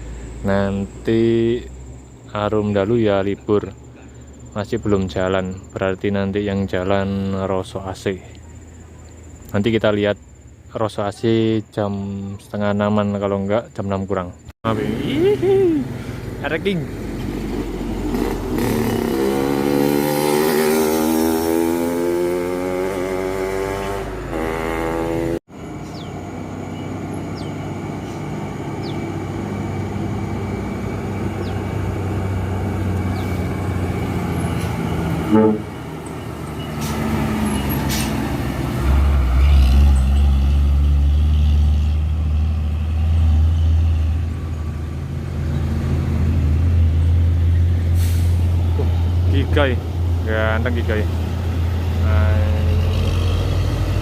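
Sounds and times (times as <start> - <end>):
passing traffic noise: 0.0 - 10.8, 14.1 - 54.0
vehicle engine revving: 14.7 - 54.0
deep engine drone: 26.2 - 36.9.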